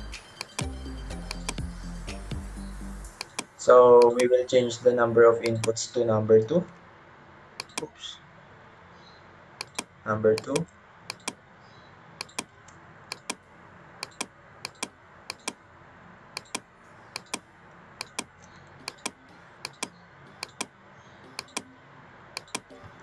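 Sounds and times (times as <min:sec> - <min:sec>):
computer mouse clicks: 0:00.4 - 0:01.6, 0:03.2 - 0:04.3, 0:05.4 - 0:05.8, 0:07.6 - 0:07.9, 0:09.6 - 0:11.4, 0:12.2 - 0:12.5, 0:13.1 - 0:13.4, 0:14.0 - 0:15.6, 0:16.4 - 0:18.3, 0:18.9 - 0:20.7, 0:21.3 - 0:21.7, 0:22.4 - 0:22.8.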